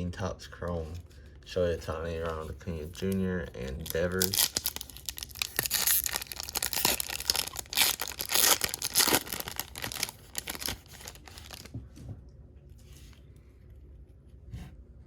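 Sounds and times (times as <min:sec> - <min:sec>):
foil wrapper tearing and crinkling: 0:02.9 - 0:11.7.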